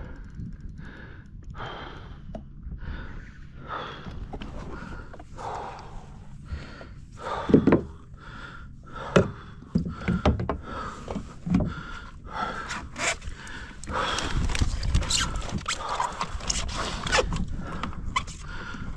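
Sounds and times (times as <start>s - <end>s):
man breathing hard: 0.0s - 18.9s.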